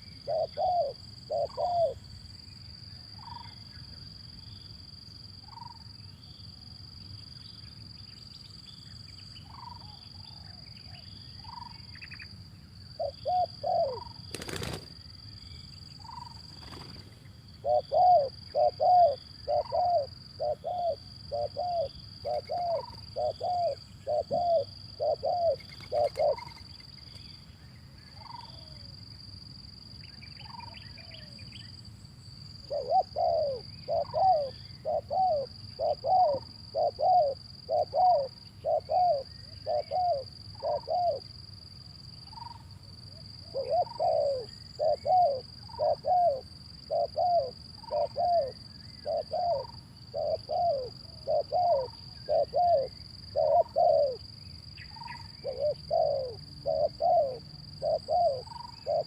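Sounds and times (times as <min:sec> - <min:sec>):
dove cooing: 0:00.0 - 0:02.0, 0:13.0 - 0:14.9, 0:17.6 - 0:26.7, 0:32.6 - 0:41.3, 0:43.4 - 0:59.0
faint bird chirps: 0:00.0 - 0:04.7, 0:05.4 - 0:29.0, 0:30.0 - 0:31.8, 0:42.2 - 0:59.0.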